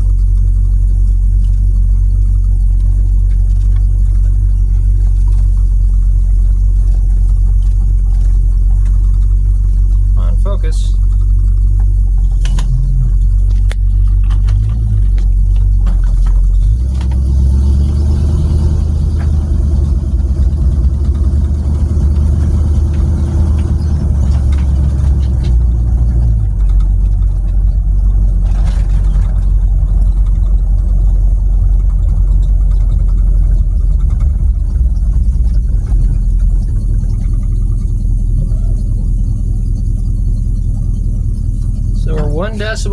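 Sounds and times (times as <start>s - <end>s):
car engine idling: 0.0s - 42.9s.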